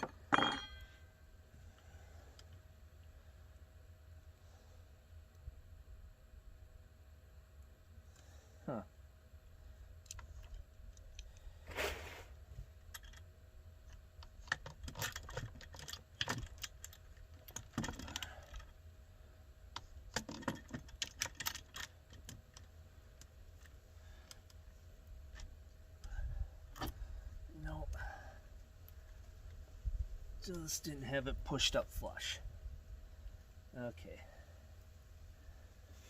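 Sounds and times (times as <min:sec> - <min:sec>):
metal parts and tools clinking: 0:00.0 - 0:01.0.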